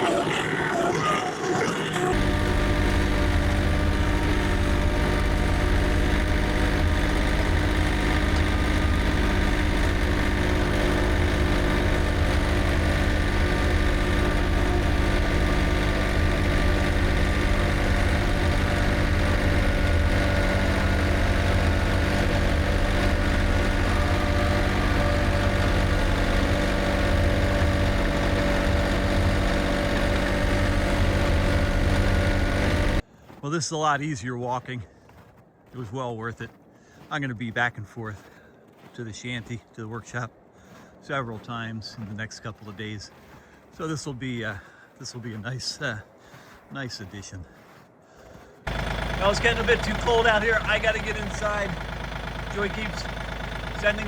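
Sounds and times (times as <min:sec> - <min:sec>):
tractor engine running: 0:00.0 - 0:33.4, 0:48.6 - 0:54.0.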